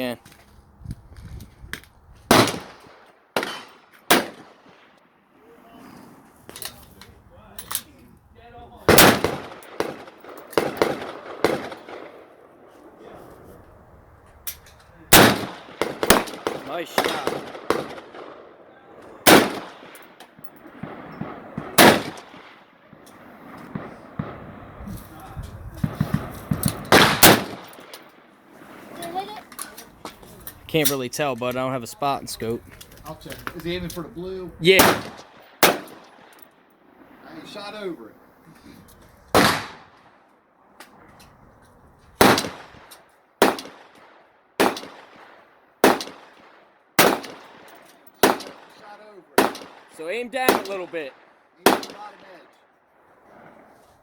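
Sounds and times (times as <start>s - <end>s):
rifle shots with echo: 2.3s - 5.0s, 8.9s - 13.4s, 15.0s - 28.9s, 34.6s - 37.2s, 39.3s - 40.2s, 42.2s - 52.5s.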